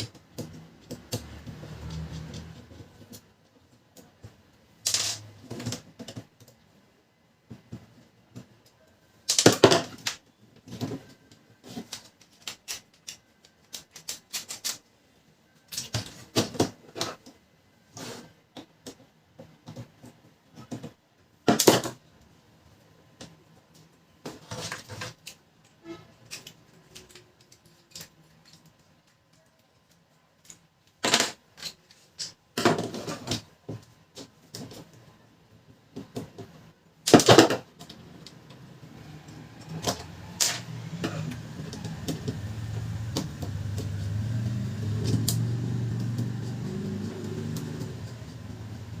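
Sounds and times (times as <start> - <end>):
plastic and metal parts clattering: 9.3 - 14.9, 24.2 - 35.0, 35.9 - 38.5.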